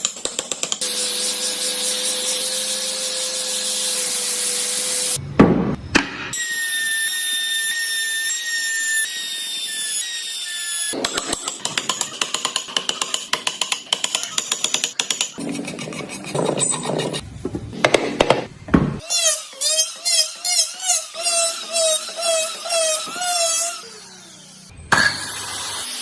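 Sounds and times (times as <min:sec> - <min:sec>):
power tool high whine: 0:00.8 - 0:05.2, 0:19.1 - 0:26.0.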